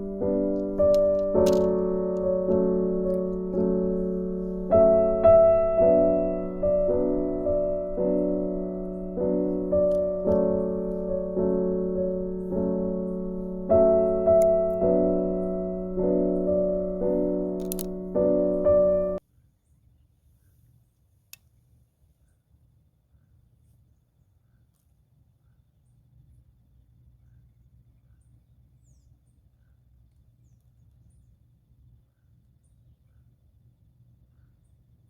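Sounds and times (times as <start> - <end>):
soft piano chords: 0.0 - 19.2.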